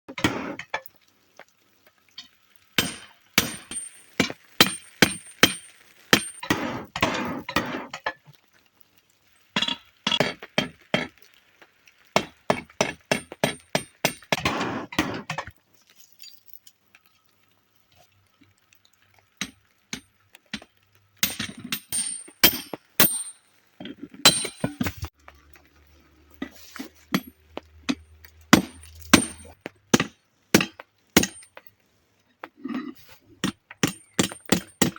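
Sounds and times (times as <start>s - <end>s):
hammer striking metal: 24.3s - 24.8s, 28.6s - 31.5s.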